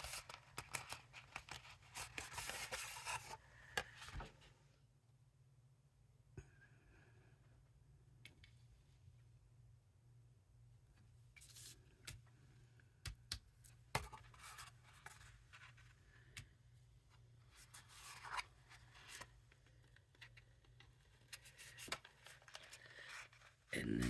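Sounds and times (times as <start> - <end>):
paper rustling and creasing: 0.0 - 4.4, 17.4 - 24.0.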